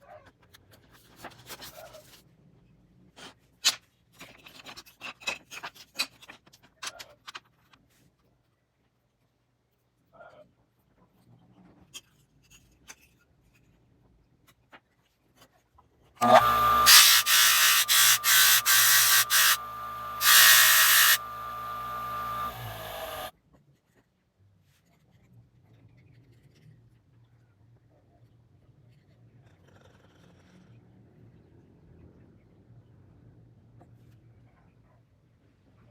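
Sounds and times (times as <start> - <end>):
power tool motor hum: 16.2 - 23.3
power tool rasping into wood: 16.2 - 23.3.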